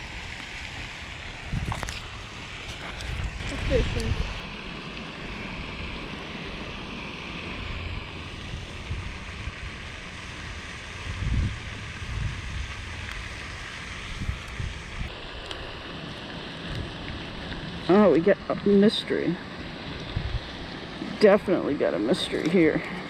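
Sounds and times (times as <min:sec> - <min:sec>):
wind on microphone: 0:01.3 - 0:15.9, 0:19.8 - 0:20.7.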